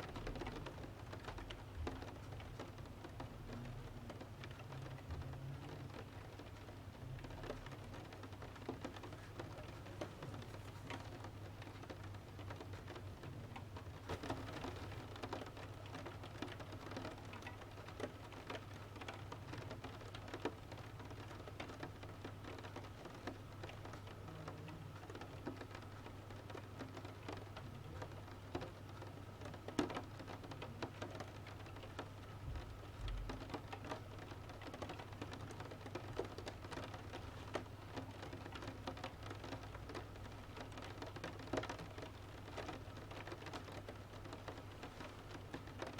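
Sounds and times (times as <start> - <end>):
rain pattering: 0.0 - 45.9
wood fire crackling in stove: 14.0 - 15.2.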